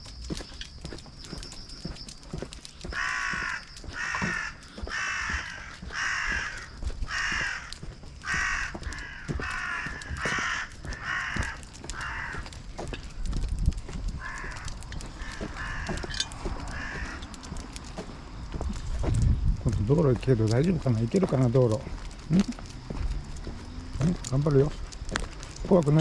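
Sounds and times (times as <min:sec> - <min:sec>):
crow cawing: 0:02.8 - 0:13.0, 0:14.1 - 0:18.1.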